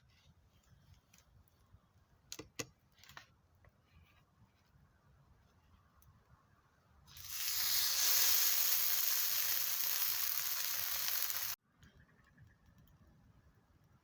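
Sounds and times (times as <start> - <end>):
loud sizzling hiss: 7.1 - 11.6.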